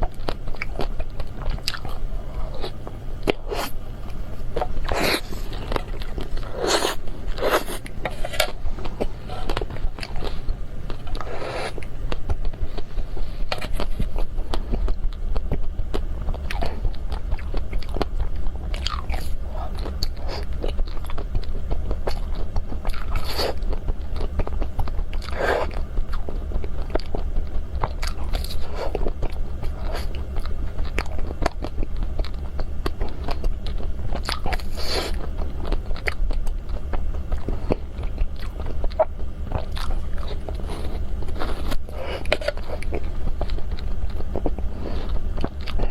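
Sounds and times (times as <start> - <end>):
chewing: 0.0 - 45.9.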